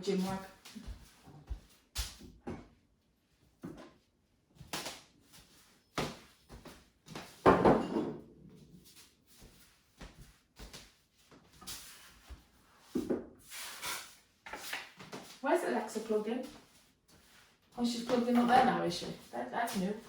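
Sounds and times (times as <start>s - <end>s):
objects knocking on kitchen surface: 7.4s - 8.3s.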